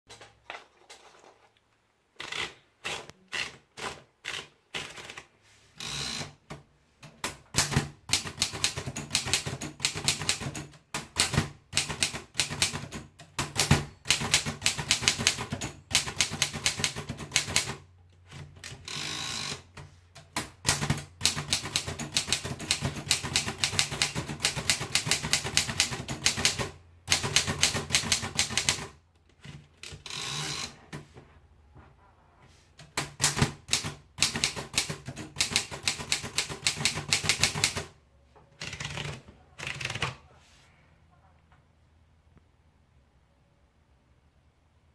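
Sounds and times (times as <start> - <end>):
typewriter keystrokes clacking: 7.2 - 17.8, 20.3 - 29.0, 32.9 - 37.9.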